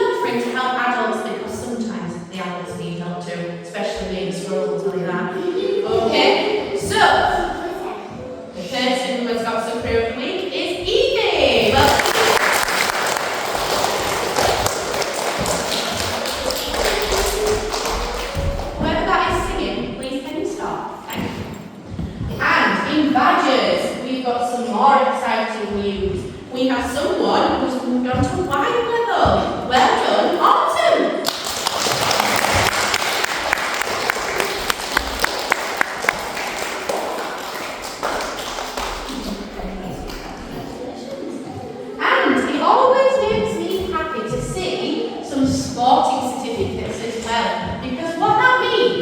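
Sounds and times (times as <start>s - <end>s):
children applauding: 11.6s - 18.8s, 31.2s - 40.8s.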